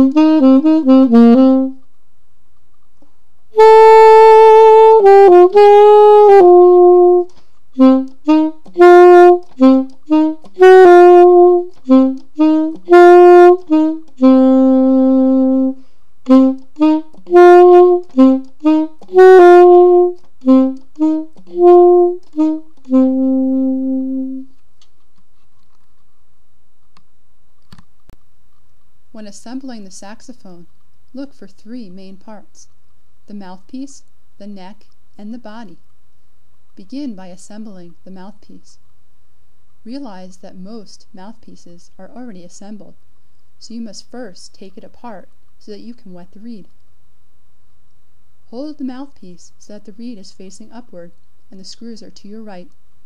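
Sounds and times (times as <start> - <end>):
solo saxophone melody: 0.0 - 1.9, 3.5 - 24.6.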